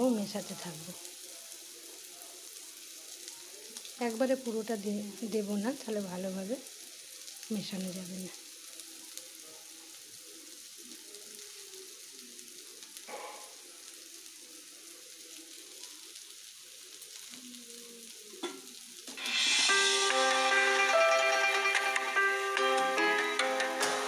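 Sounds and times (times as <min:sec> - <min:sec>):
noodles sizzling in a frying pan: 0:00.0 - 0:24.0
plucked-string background music: 0:19.2 - 0:24.0.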